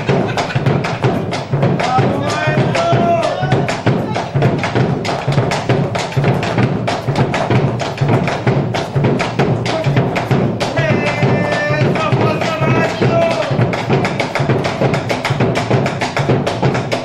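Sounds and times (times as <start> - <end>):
fast sharp percussion strikes: 0.0 - 17.0
low drum beat: 0.0 - 17.0.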